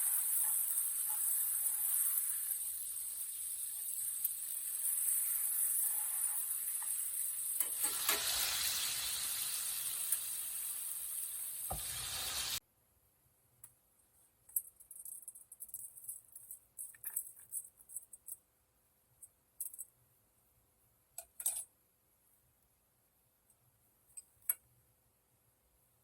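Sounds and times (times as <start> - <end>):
food sizzling in a frying pan: 0.0 - 12.6.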